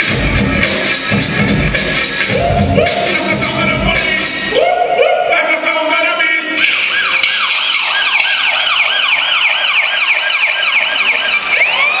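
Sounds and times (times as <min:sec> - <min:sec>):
siren yelping: 0:06.5 - 0:12.0.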